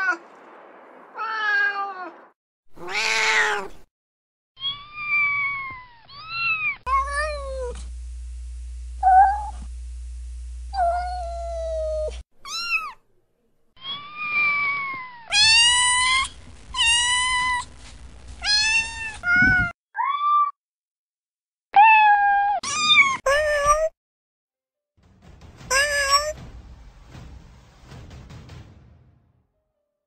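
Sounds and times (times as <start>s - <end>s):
cat meowing: 2.8s - 3.8s, 13.8s - 17.7s, 18.4s - 20.6s.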